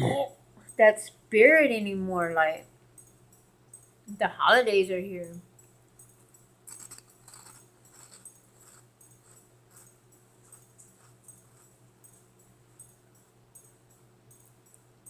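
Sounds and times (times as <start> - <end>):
steady low hum: 0.0 - 15.0
chewing crunchy snack: 6.7 - 9.9.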